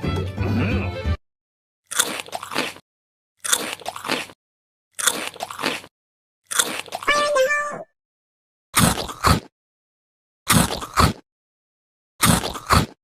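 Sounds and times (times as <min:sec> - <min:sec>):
sharp bite: 0:01.9 - 0:02.8, 0:05.0 - 0:05.9, 0:06.5 - 0:07.1, 0:08.8 - 0:09.5, 0:10.5 - 0:11.2, 0:12.2 - 0:13.0
wet crunchy chewing: 0:01.9 - 0:02.8, 0:03.4 - 0:05.9, 0:06.5 - 0:07.1, 0:08.8 - 0:09.5, 0:10.5 - 0:11.2, 0:12.2 - 0:13.0.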